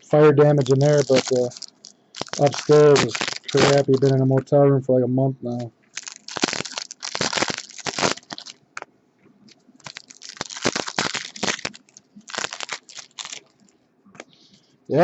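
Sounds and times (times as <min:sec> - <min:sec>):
plastic wrapping crinkling: 0:00.5 - 0:04.3, 0:05.8 - 0:08.9, 0:09.5 - 0:13.8.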